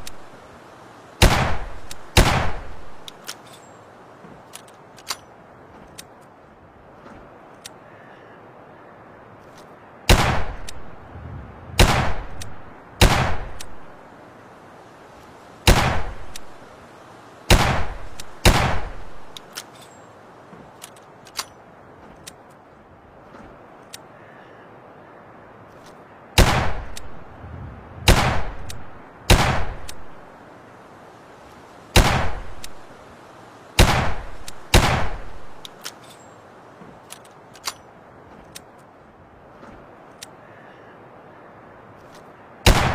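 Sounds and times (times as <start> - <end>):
revolver gunshots with echo: 1.2 - 2.7, 10.1 - 10.6, 11.8 - 12.4, 13.0 - 13.6, 15.7 - 16.2, 17.5 - 19.0, 26.4 - 26.9, 28.1 - 28.7, 29.3 - 29.9, 32.0 - 32.5, 33.8 - 35.3, 42.6 - 42.9
faint clicks of reloading: 20.7 - 22.7.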